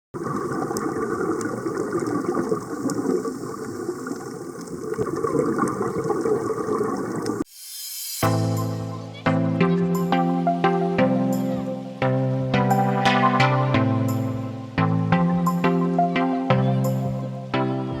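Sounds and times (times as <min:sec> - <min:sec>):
churning bubbling water: 0:00.2 - 0:07.5.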